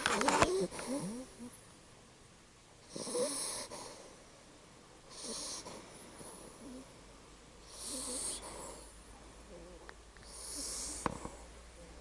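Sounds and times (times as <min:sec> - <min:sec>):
puppy snoring: 0:00.0 - 0:01.6, 0:02.8 - 0:04.3, 0:05.1 - 0:07.0, 0:07.6 - 0:12.0.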